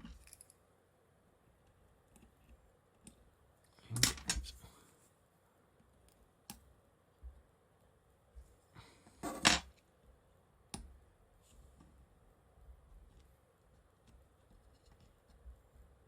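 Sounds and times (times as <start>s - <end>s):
small parts and tools clicking: 0.0s - 0.6s.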